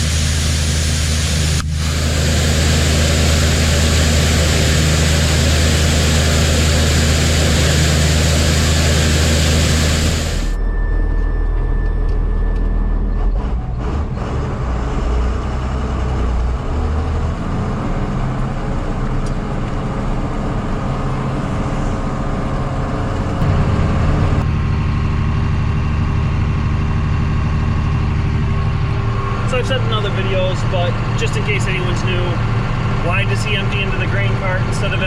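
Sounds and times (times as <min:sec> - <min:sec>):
heavy diesel engine droning: 0:00.0 - 0:35.0.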